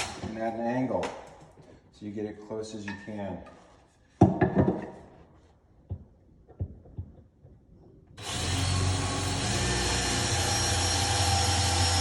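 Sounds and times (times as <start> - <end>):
power drill drilling wood: 8.2 - 12.0.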